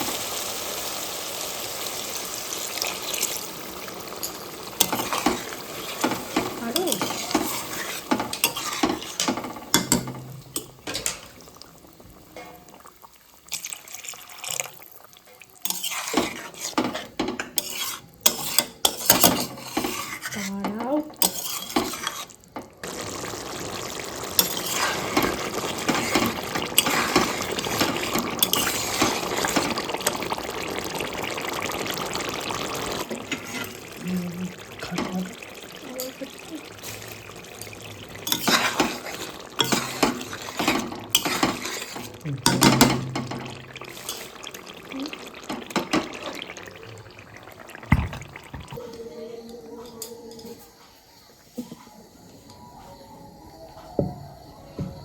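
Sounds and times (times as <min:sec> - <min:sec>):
frying sizzle: 0:00.0 - 0:48.9
spatula scraping metal pan: 0:04.2 - 0:11.2, 0:15.6 - 0:22.4, 0:24.4 - 0:29.8, 0:33.1 - 0:33.8, 0:38.2 - 0:44.4.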